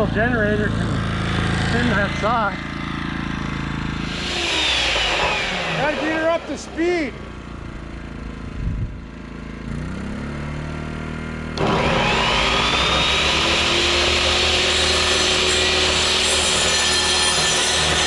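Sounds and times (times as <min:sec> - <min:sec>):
portable generator running: 0:00.0 - 0:09.2, 0:11.6 - 0:18.0
electric saw whining: 0:03.6 - 0:07.9, 0:11.6 - 0:18.0.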